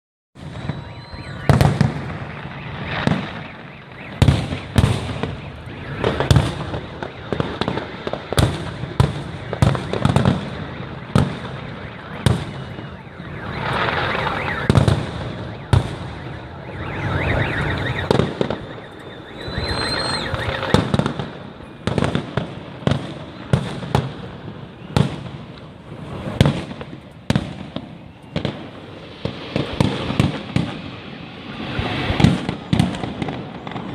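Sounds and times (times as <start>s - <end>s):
fireworks bursting with bangs: 0.4s - 33.9s
fireworks crackling: 0.4s - 33.9s.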